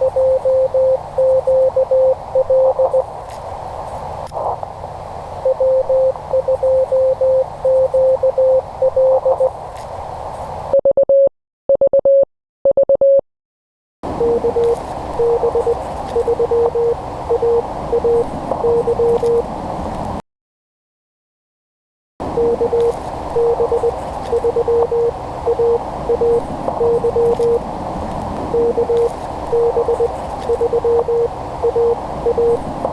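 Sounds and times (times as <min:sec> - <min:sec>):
morse code beeping tone: 0:00.0 - 0:03.0, 0:05.4 - 0:09.5, 0:14.2 - 0:19.4, 0:22.4 - 0:27.6, 0:28.5 - 0:32.7
radio band noise hiss: 0:00.0 - 0:10.7, 0:14.1 - 0:20.2, 0:22.2 - 0:32.9.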